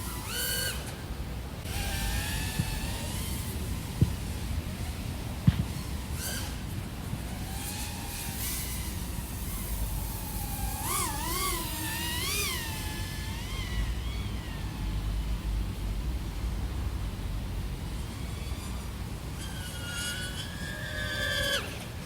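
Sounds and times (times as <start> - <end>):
drone motor whine: 0.0 - 16.6, 17.2 - 22.0
wind and prop wash rumble: 0.0 - 22.0.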